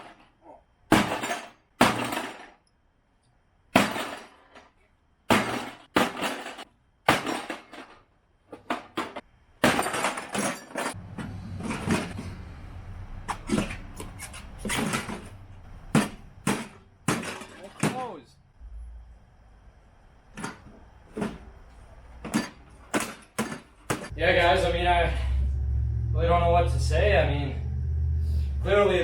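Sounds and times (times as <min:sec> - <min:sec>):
rough continuous rattle: 0:08.6 - 0:19.1, 0:20.2 - 0:29.0
metal clattering: 0:09.1 - 0:12.6.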